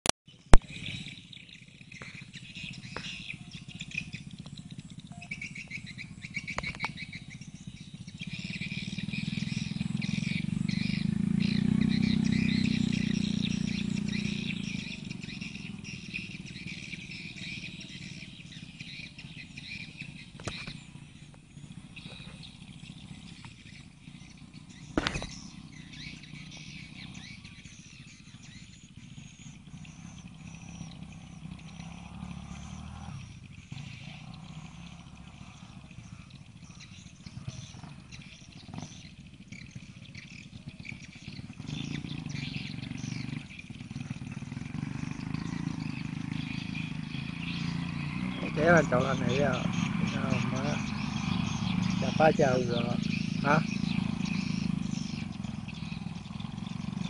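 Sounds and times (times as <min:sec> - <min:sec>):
sharp clicks: 0:06.5 - 0:07.0.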